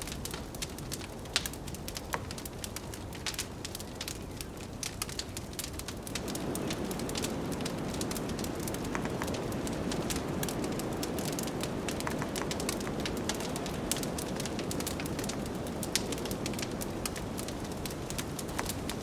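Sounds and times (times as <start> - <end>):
wood fire crackling and popping: 0.0 - 19.0
blizzard wind rushing: 6.0 - 19.0.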